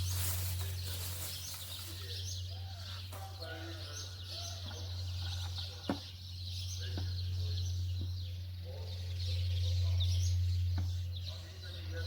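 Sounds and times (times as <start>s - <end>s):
small birds chirping: 0.0s - 12.0s
steady low hum: 0.0s - 12.0s.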